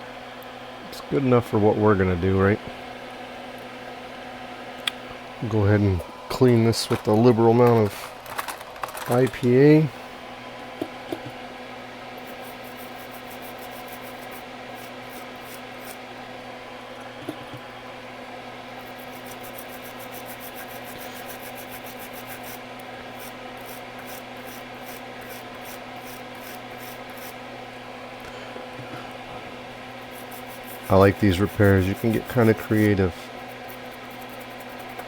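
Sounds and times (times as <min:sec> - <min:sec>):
fan humming: 0:00.0 - 0:35.0
brush scrubbing circuit board: 0:12.2 - 0:16.0, 0:18.8 - 0:27.4, 0:30.0 - 0:35.0.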